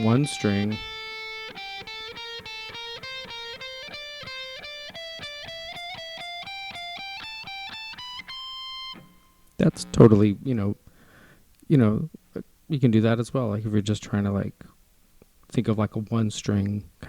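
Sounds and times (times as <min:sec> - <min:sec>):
guitar picking a fast scale: 0:00.0 - 0:10.4.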